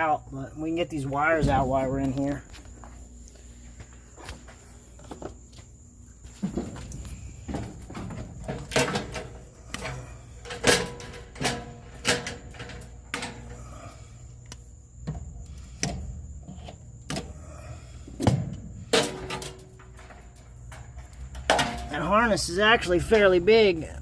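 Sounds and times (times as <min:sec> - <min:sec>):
wires and connectors rattling on metal: 0:06.4 - 0:13.7.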